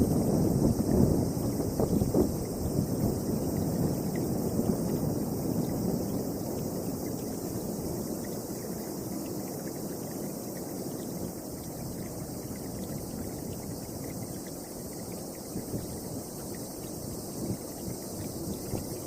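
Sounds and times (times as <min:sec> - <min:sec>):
strong storm wind blowing: 0:00.0 - 0:06.2.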